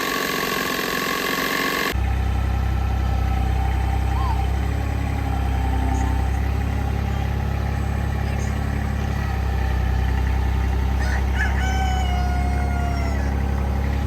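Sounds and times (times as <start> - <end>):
engine running: 0.0 - 14.0
rooster crowing: 4.0 - 6.6, 10.4 - 14.0.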